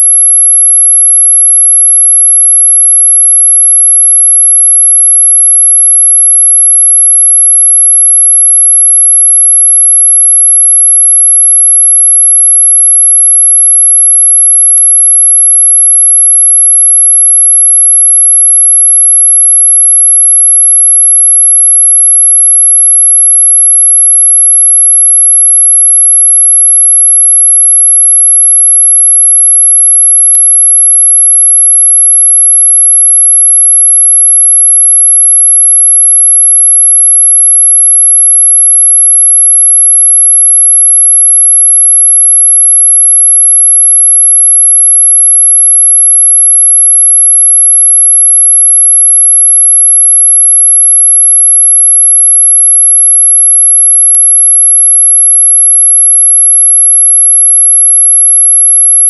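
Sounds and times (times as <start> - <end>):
high-pitched pure tone: 0.0 - 0.2.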